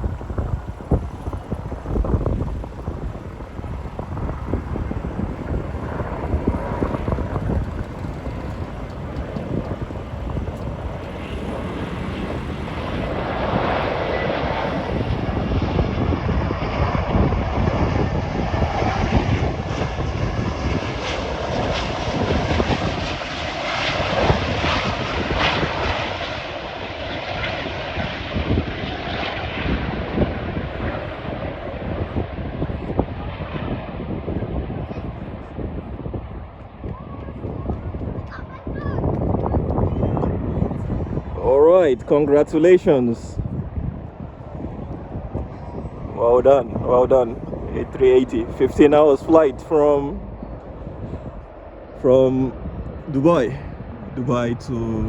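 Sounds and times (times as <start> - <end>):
jet engines roaring: 0.0 - 55.0.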